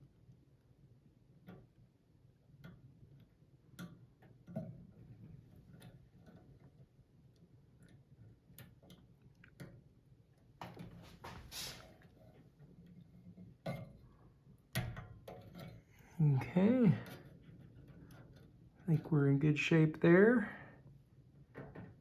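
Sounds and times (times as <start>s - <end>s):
scraping rustle: 10.8s - 12.4s.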